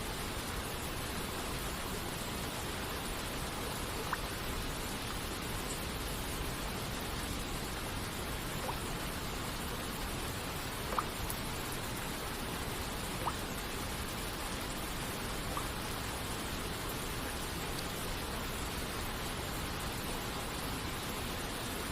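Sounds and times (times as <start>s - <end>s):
rain hissing: 0.0s - 21.9s
water droplet plinking: 10.9s - 11.2s.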